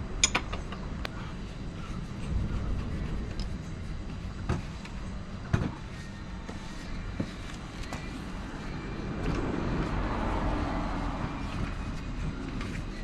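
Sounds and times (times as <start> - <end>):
vehicle passing by: 8.2 - 13.0.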